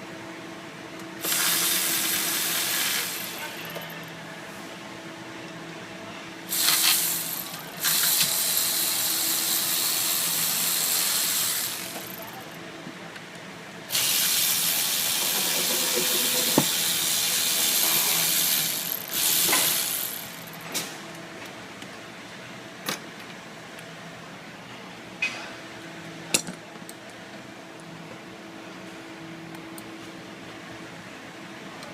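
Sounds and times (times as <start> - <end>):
loud air hiss: 1.2 - 3.5, 6.5 - 12.2, 13.9 - 20.6
tool clicks and taps: 15.2 - 16.7.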